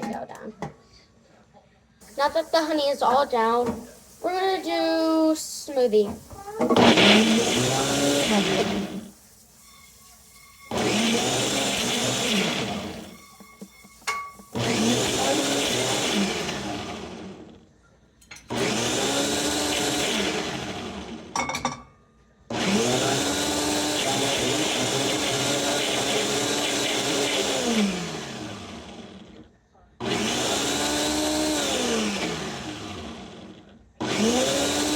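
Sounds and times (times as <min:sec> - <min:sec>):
blender motor blending frozen fruit: 0:06.0 - 0:17.6, 0:18.4 - 0:21.4, 0:22.5 - 0:34.9.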